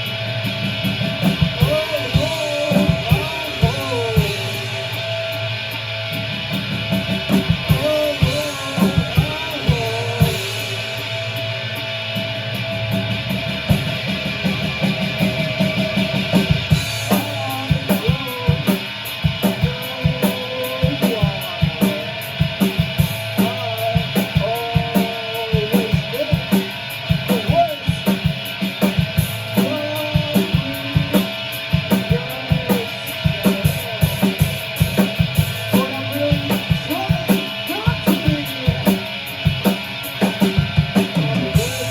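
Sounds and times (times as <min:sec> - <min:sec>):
drum kit: 0:00.0 - 0:41.9
guitar: 0:00.0 - 0:41.9
rock band playing live: 0:00.0 - 0:41.9.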